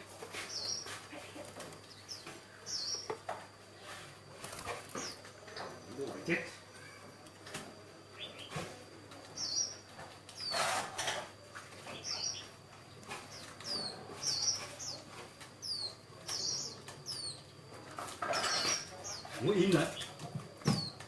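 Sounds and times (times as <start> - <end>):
small bird chirping: 0.4 - 3.9, 9.3 - 10.8, 11.8 - 21.0.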